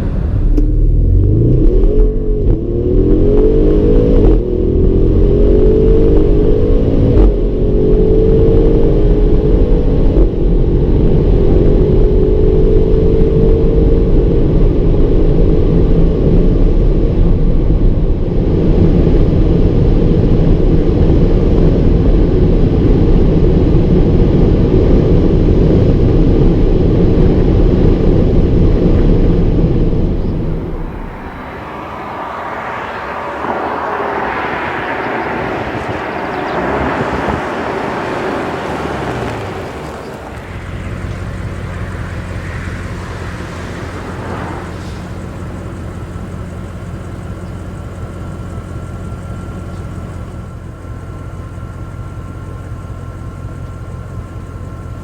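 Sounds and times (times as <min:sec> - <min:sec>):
car engine accelerating through gears: 0:00.0 - 0:55.0.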